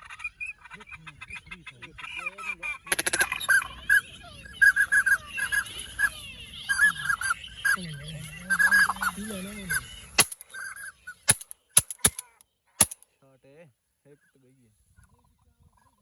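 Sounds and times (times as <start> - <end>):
ducks quacking: 0.0 - 3.8
sharp bang: 11.3 - 12.2.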